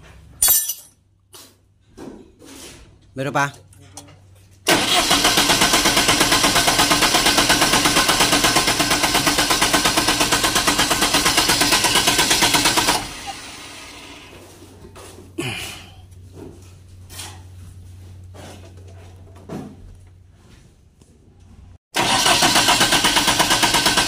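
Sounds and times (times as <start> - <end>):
engine cranking by starter: 4.6 - 14.3, 22.0 - 24.0.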